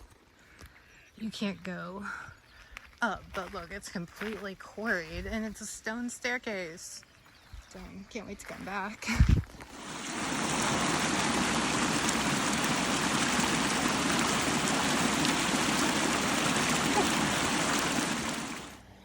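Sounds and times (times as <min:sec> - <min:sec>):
water rushing down a stream: 0:09.7 - 0:18.9.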